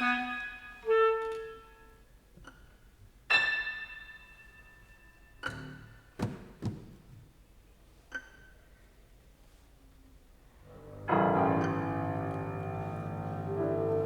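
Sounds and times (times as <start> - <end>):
short sharp knocks: 5.4 - 7.2
sparse chamber music: 10.7 - 14.0.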